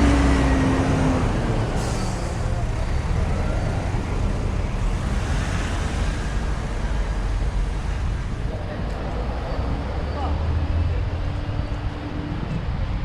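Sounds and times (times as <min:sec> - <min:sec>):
road noise: 0:00.0 - 0:13.0
vehicle engine rumbling: 0:00.0 - 0:13.0.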